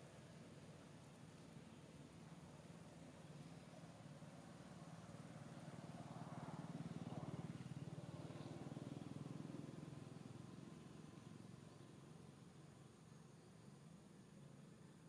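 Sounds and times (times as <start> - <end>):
distant vehicle engine passing: 4.0 - 11.2.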